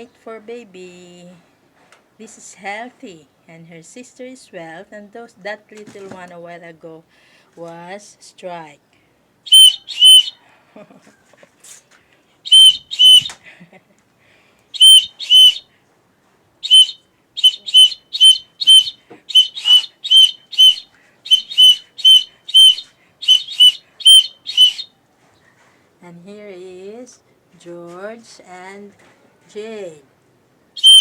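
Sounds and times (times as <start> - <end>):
shrill whistle toots: 9.5 - 10.4, 12.5 - 13.3, 14.8 - 15.6, 16.6 - 24.9, 30.8 - 31.0.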